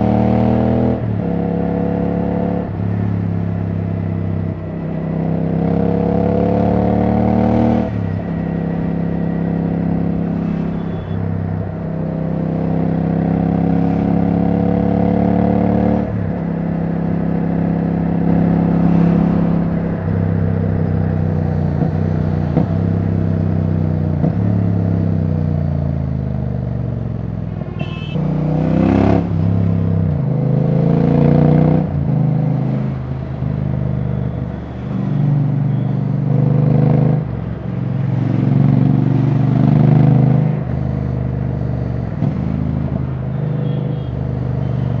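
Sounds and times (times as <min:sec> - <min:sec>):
motorcycle engine revving: 0:27.8 - 0:34.0.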